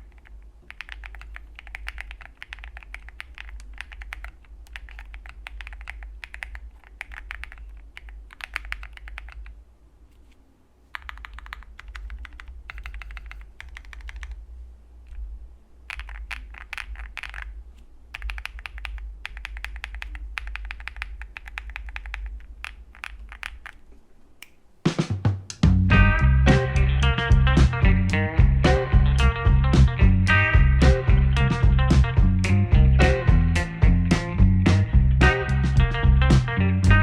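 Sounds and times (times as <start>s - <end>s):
mechanical keyboard typing: 0.0s - 9.6s, 10.9s - 14.4s, 15.9s - 23.9s
faint low hum: 0.0s - 37.0s.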